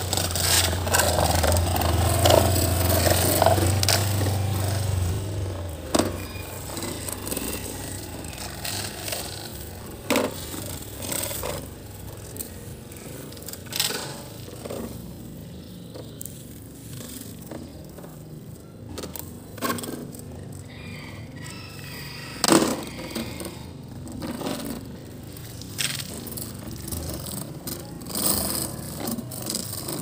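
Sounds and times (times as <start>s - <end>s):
low steady rumble: 0.0s - 13.6s
toy trucks knocking and scraping: 0.0s - 30.0s.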